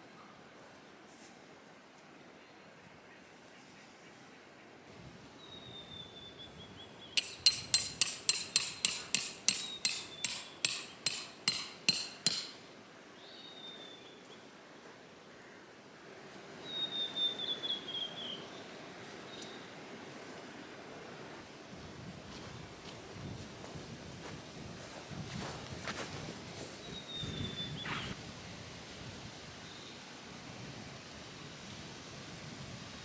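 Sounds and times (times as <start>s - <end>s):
hammer blows on metal pegs: 7.2s - 12.6s.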